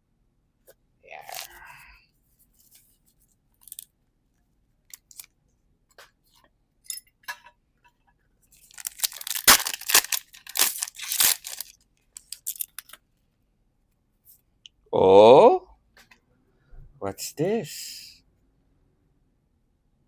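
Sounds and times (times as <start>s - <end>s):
foil pack crinkling and tearing: 1.3s - 1.5s, 8.6s - 12.8s.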